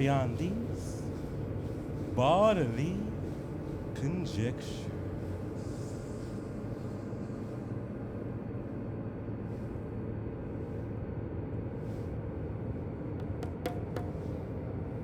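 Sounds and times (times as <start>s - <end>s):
low room noise rumble: 0.0s - 15.0s
sharp taps: 13.2s - 14.3s.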